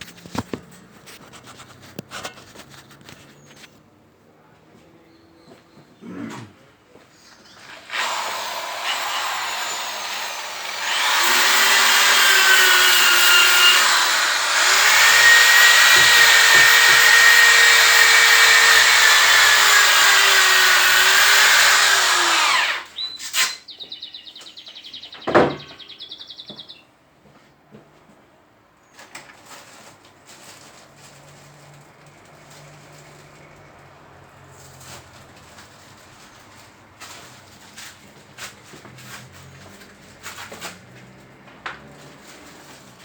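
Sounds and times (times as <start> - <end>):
power tool polishing metal pot: 8.9 - 22.7.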